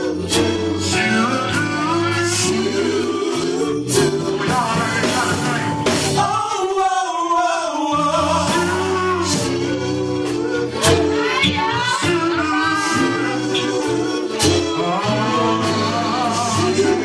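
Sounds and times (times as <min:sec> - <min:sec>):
gospel song with band: 0:00.0 - 0:17.0
people singing: 0:00.0 - 0:17.0
steady drum beat: 0:01.5 - 0:06.4, 0:08.4 - 0:17.0.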